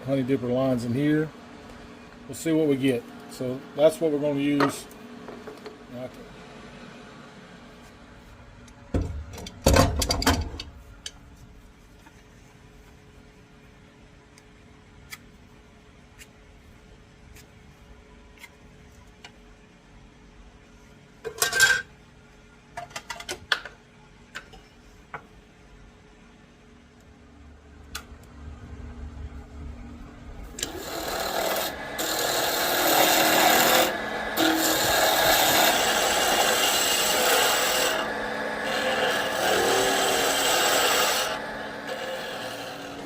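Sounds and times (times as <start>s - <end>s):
lathe tool rasping on wood: 30.6s - 43.0s.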